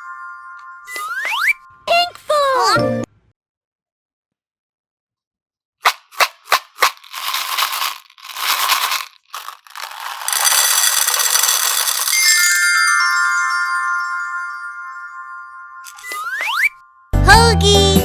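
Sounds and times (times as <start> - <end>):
descending bell-like chimes: 0.0 - 1.8, 11.8 - 17.1.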